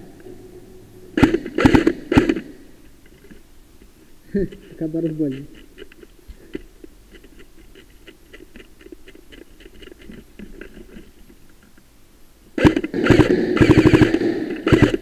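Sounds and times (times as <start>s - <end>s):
rapid mechanical clacks and rattling: 12.6s - 15.0s.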